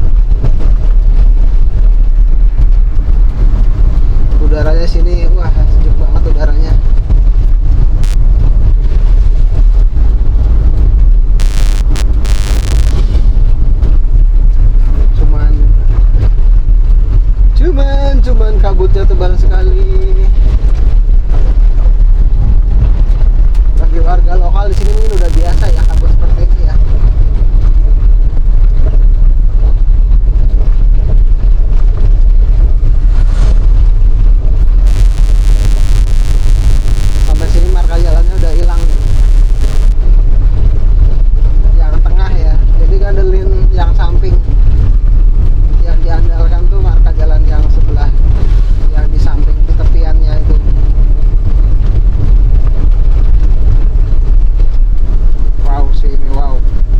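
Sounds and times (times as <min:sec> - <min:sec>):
wind buffeting microphone: 0:00.0 - 0:56.9
vehicle noise: 0:06.7 - 0:15.1, 0:29.6 - 0:41.1.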